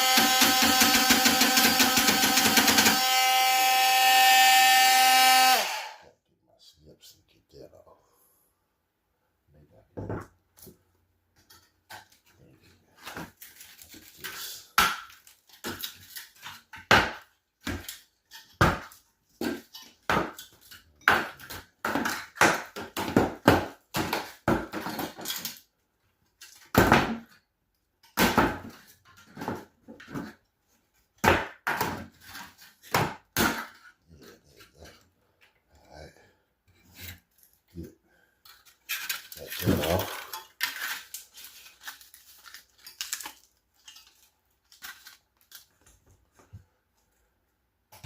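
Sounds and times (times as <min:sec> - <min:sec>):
hand tools scraping drywall: 0:36.7 - 0:37.4.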